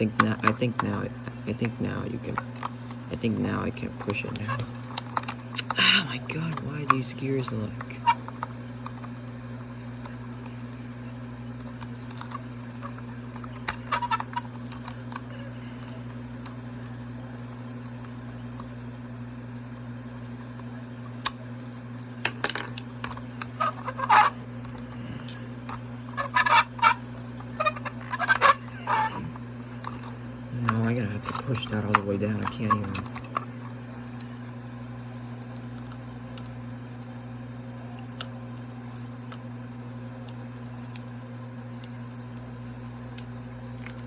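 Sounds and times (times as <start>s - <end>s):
steady low hum: 0.0s - 44.0s
plastic gears clicking: 27.6s - 33.7s.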